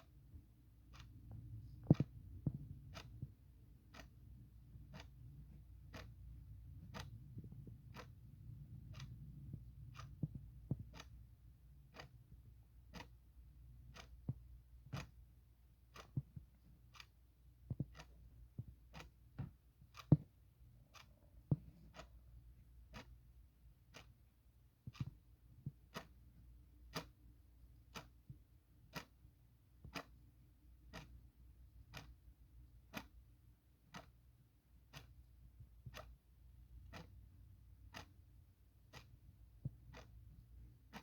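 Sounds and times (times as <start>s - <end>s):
clock ticking: 0.0s - 41.0s
faint low hum: 0.0s - 41.0s.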